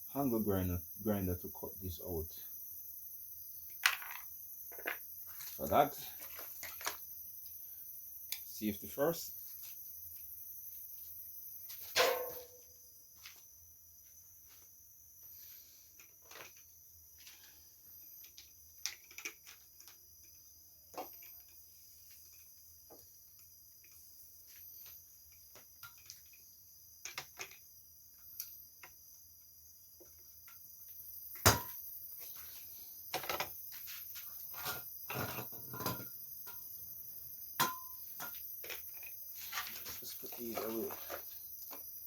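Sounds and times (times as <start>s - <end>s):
high chirring of crickets: 0.0s - 42.0s
objects being handled: 3.8s - 7.1s.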